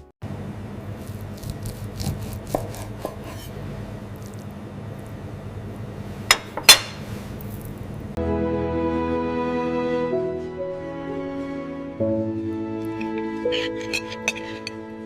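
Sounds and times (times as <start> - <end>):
music: 8.2 - 15.0.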